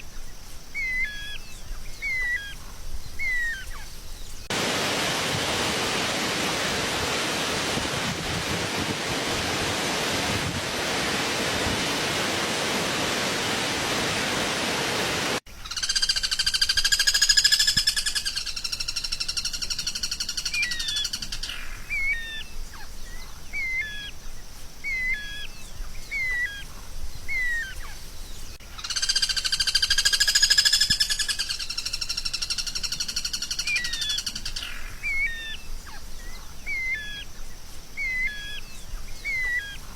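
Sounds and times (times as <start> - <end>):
steady hiss: 0.0 - 15.6.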